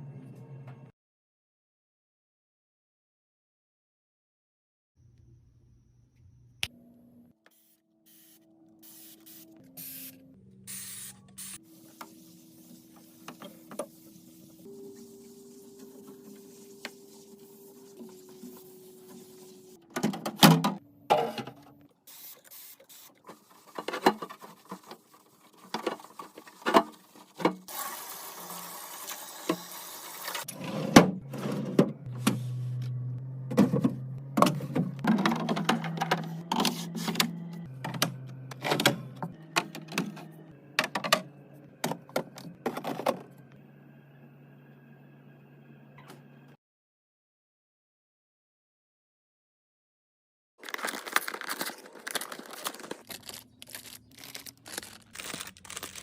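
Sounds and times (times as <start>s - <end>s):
items being handled and set down: 19.9s - 21.8s, 23.3s - 27.7s, 30.4s - 43.4s.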